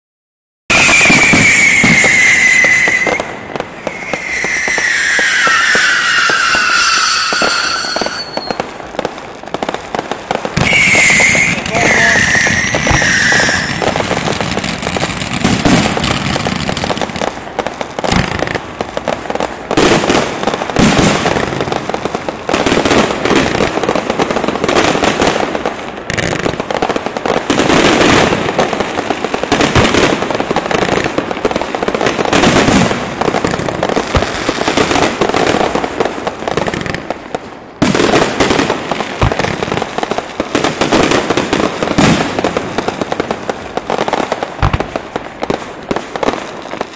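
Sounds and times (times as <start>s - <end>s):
fireworks cracking and banging: 0.7s - 46.9s.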